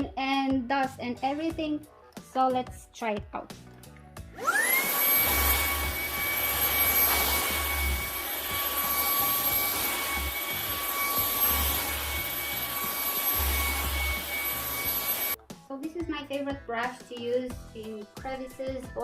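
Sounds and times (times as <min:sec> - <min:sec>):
handheld vacuum cleaner running: 0:04.4 - 0:15.4.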